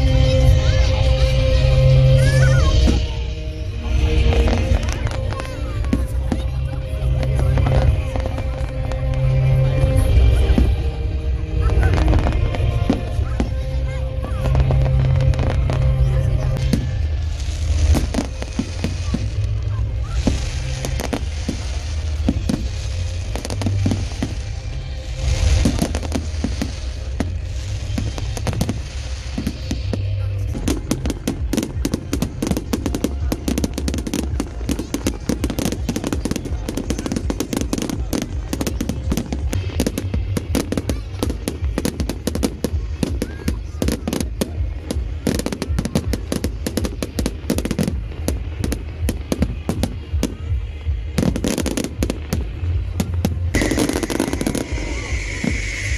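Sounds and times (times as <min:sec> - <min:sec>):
rapid firework crackling: 0:00.0 - 0:55.9
firework shells booming: 0:53.5 - 0:55.9.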